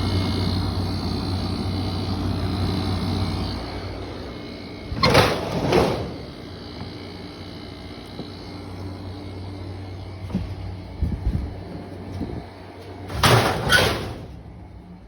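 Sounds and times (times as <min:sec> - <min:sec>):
air conditioner humming: 0:00.0 - 0:15.0
loud scraping noises: 0:04.9 - 0:06.7.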